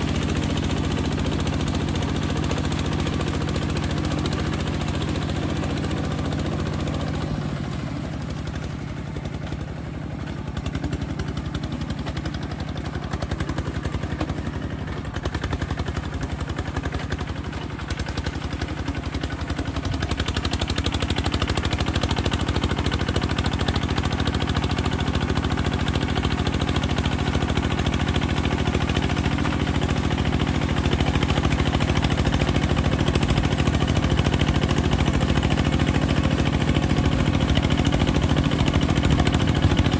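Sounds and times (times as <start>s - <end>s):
bulldozer engine running: 0.0s - 39.9s.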